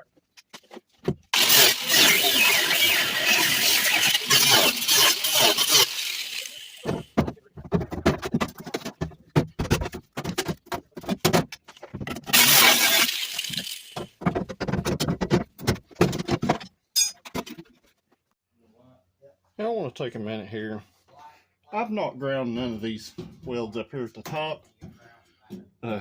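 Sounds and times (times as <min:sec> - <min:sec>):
metallic clinks and clanks: 0:16.9 - 0:17.4.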